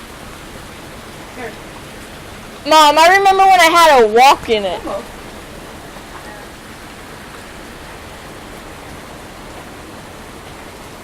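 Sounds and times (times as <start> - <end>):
heavy rain: 0.0 - 11.0.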